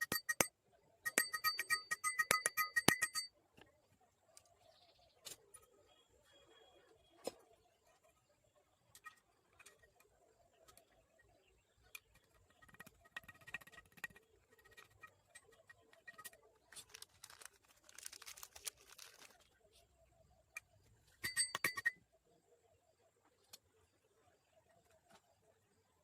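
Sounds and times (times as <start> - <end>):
metal tools clicking and knocking: 0.0 - 3.3, 20.6 - 22.0
ringing metallic clinks: 1.1 - 3.3.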